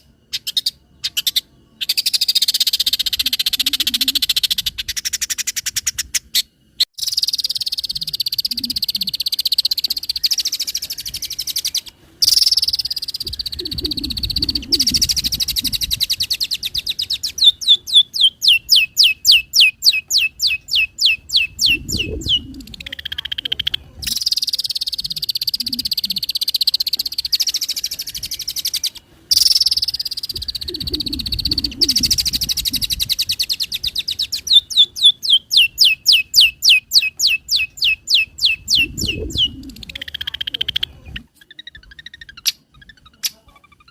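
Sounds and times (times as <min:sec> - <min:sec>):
shrike singing chattering song: 0:00.0 - 0:43.9
low croaking: 0:13.3 - 0:16.1, 0:30.4 - 0:33.1.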